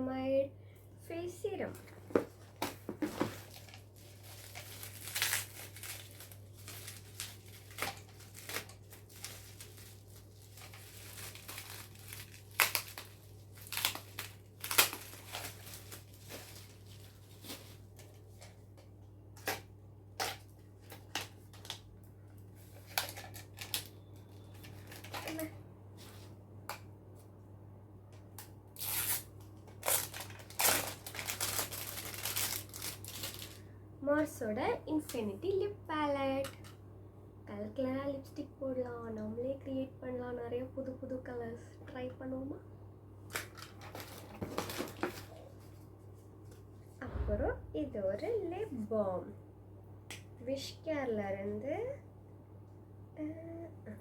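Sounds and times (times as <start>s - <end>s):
wrapping crinkling and tearing: 3.1s - 18.6s, 22.6s - 25.5s, 28.4s - 33.7s, 43.2s - 45.8s.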